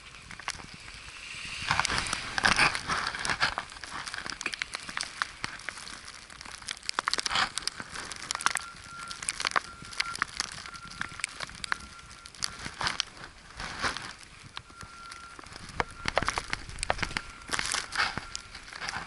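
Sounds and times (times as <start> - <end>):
faint high beep: 8.3 - 12.3, 14.6 - 18.5
footsteps crunching in snow: 10.8 - 19.0.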